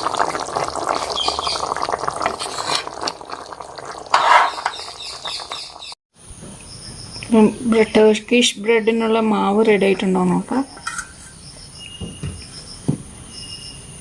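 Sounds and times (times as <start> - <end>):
curry bubbling in a pot: 0.0 - 6.0.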